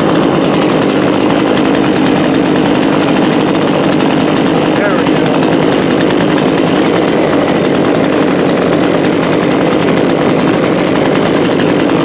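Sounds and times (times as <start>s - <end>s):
chainsaw engine running: 0.0s - 12.0s.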